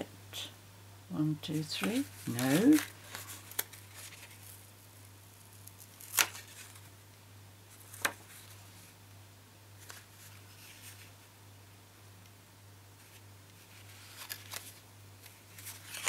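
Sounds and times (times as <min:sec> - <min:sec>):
paper rustling: 0:01.6 - 0:04.9, 0:05.5 - 0:06.9, 0:07.7 - 0:08.9, 0:09.8 - 0:11.1, 0:13.0 - 0:16.0.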